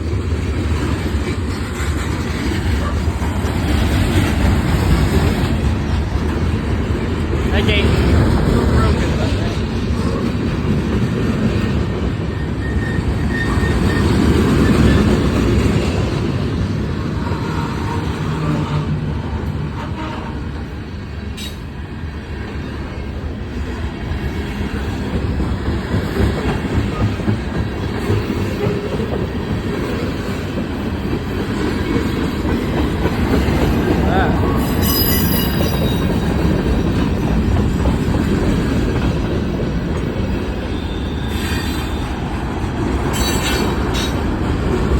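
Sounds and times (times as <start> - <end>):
train wheels rumbling on rail: 0.0 - 44.9
high wheel squeal: 12.3 - 15.2, 34.5 - 36.4, 40.6 - 42.2.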